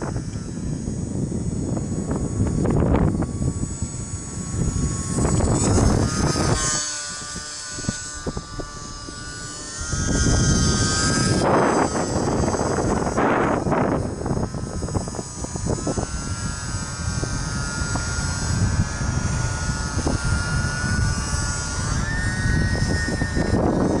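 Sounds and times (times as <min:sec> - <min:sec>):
model plane motor whining: 0:00.0 - 0:24.0
wind buffeting microphone: 0:00.0 - 0:24.0.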